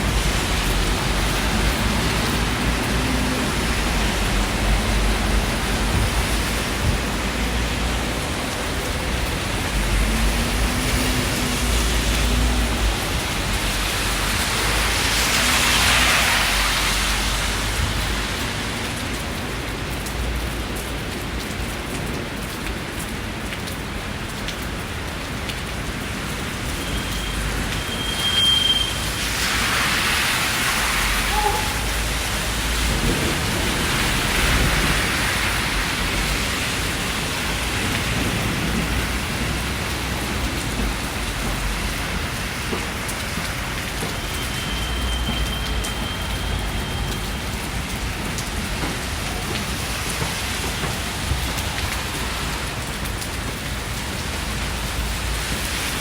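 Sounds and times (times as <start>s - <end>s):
steady rain falling: 0.0s - 56.0s
short high beep: 27.9s - 29.0s.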